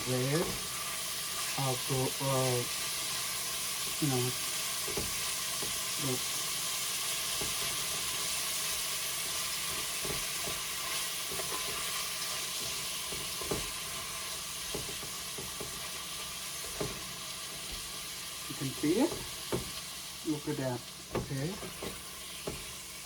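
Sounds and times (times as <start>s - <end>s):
food sizzling in hot oil: 0.0s - 23.0s
stirring knocks: 4.7s - 5.9s, 9.3s - 20.0s, 20.8s - 23.0s.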